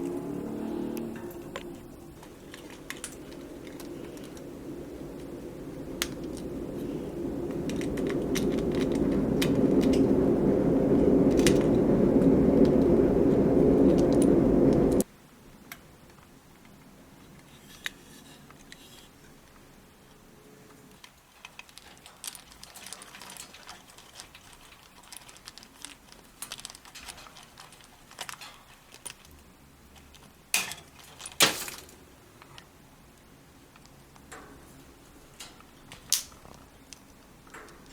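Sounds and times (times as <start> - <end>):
steady rushing noise: 0.0 - 15.0.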